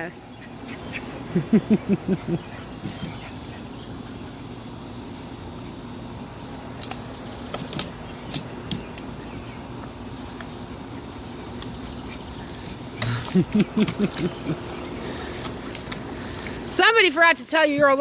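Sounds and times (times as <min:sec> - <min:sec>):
steady hum: 0:00.0 - 0:18.0.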